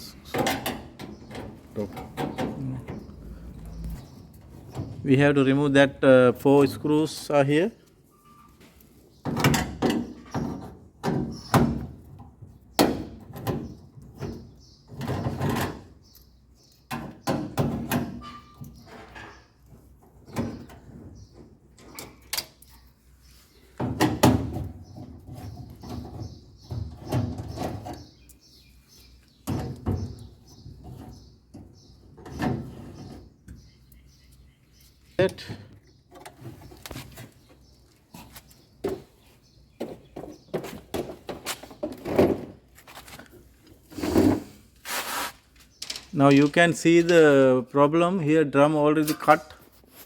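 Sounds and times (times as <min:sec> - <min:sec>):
metal knocks and clunks: 0:00.3 - 0:05.0, 0:23.8 - 0:28.2
sheet-metal panels handled: 0:45.7 - 0:47.3.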